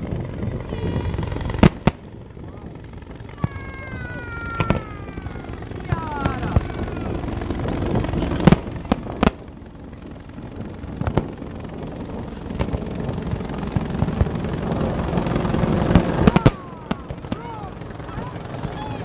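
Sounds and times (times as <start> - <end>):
fireworks bangs: 0.0 - 2.1, 3.3 - 9.5, 10.5 - 11.3, 15.6 - 19.0.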